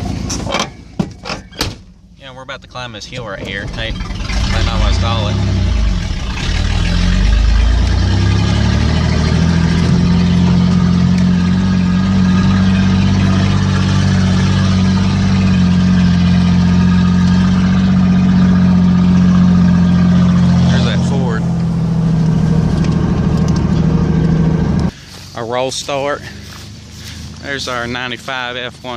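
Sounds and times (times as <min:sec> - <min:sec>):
pickup engine pulling under load: 0:03.2 - 0:25.3.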